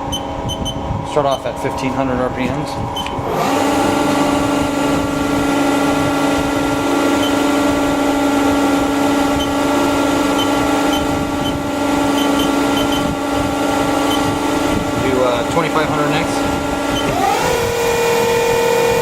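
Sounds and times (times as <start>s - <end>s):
lathe spindle humming: 0.0s - 19.0s.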